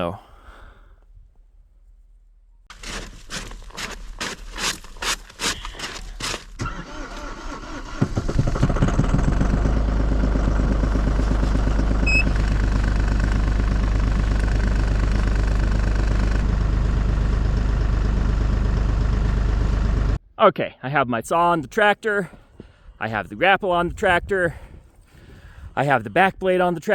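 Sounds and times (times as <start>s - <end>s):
crunching: 1.9s - 9.2s
tractor engine starting and idling: 6.3s - 20.2s.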